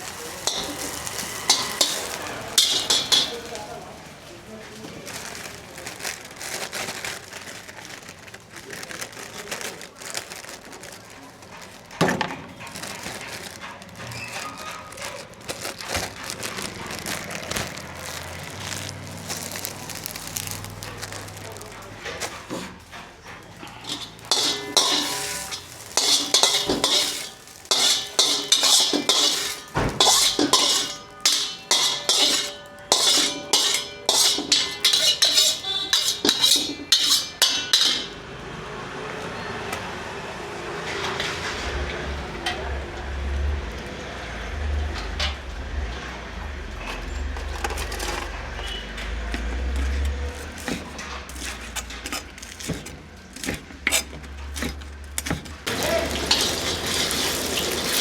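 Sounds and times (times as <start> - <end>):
metal ladle clanging against wok: 0.0 - 3.6, 22.1 - 38.3, 46.8 - 58.0.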